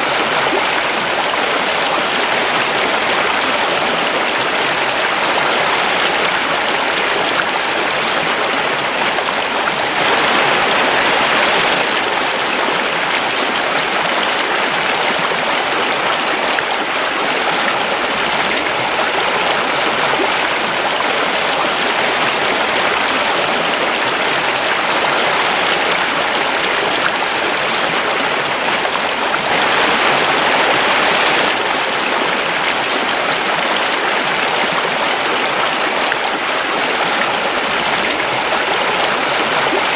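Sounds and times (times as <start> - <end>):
river rushing over rocks: 0.0 - 39.9.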